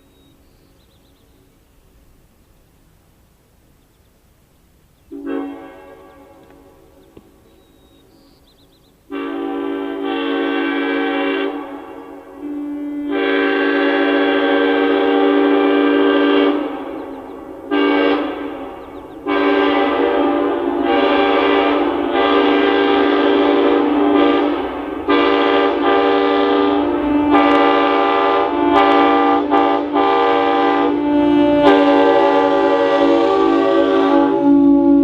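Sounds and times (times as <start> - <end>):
locomotive air horn blasts: 5.1 - 6.8, 9.1 - 35.0.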